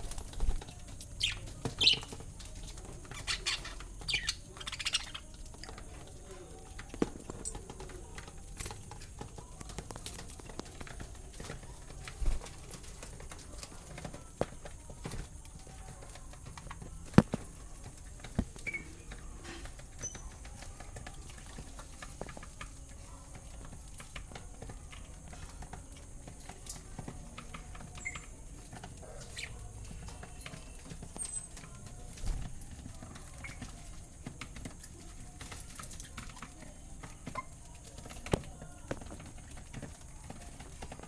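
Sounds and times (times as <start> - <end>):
faint bird chirps: 0.0 - 6.6, 18.5 - 21.4, 27.6 - 32.0, 33.1 - 34.0
birds tapping and clicking: 0.0 - 41.0.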